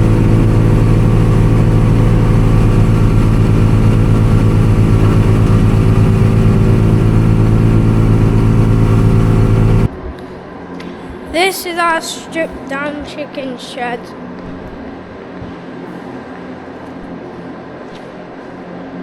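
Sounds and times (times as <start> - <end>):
farm machine engine running: 0.0 - 9.9.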